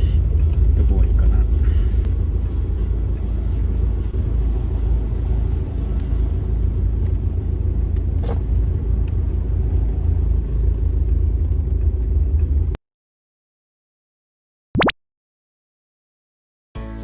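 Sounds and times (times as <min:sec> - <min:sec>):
vehicle driving low rumble: 0:00.0 - 0:12.8.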